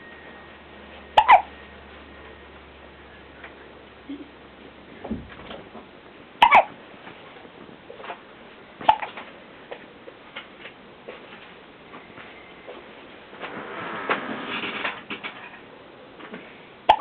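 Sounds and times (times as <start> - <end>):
faint small hiccup sounds: 1.2 - 1.5, 6.4 - 6.7, 8.8 - 9.2
loud sharp hiccups: 1.2 - 1.5, 6.4 - 6.8, 8.8 - 9.2.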